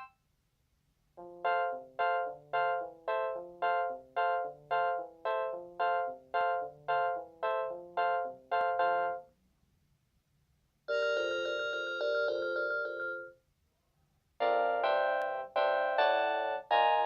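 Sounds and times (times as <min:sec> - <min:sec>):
cordless phone ringtones: 0:10.9 - 0:13.3.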